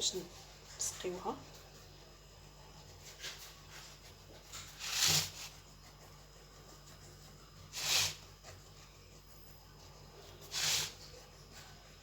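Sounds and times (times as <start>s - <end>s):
knife sawing through cake: 0.8s - 9.2s, 9.8s - 12.0s.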